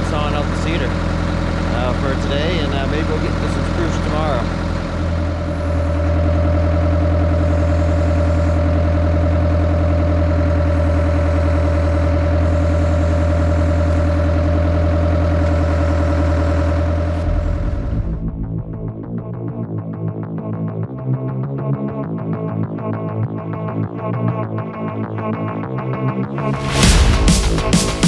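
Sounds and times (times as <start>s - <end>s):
diesel engine running: 0.0s - 19.8s, 26.4s - 28.0s.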